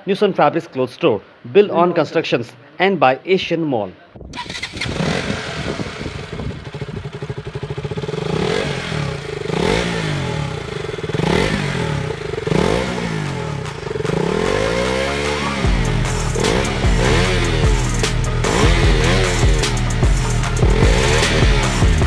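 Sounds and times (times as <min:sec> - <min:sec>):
motorcycle engines revving: 0:04.4 - 0:22.0.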